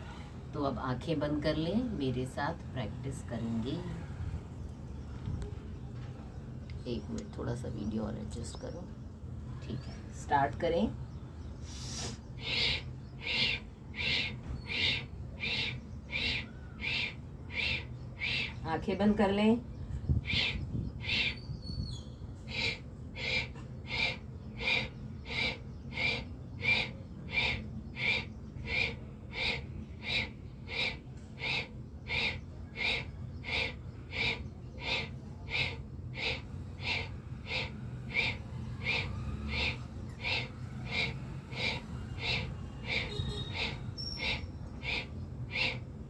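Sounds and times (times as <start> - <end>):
forceful nasal breathing: 11.6 - 18.6, 22.5 - 45.8.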